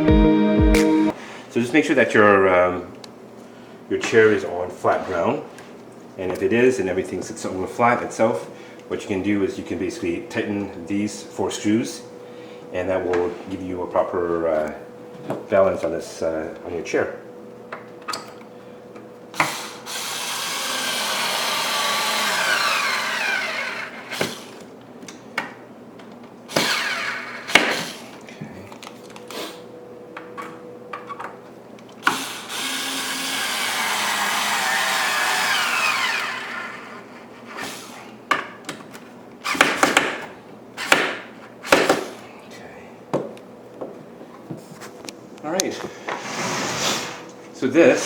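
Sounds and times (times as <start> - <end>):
power drill driving screws: 19.4 - 24.6, 26.5 - 28.0, 32.0 - 37.0.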